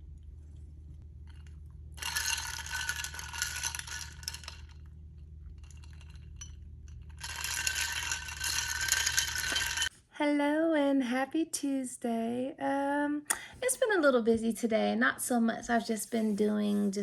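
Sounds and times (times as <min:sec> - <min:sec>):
steady low hum: 0:00.0 - 0:09.9
small hard objects clinking: 0:01.3 - 0:04.9, 0:05.5 - 0:09.9.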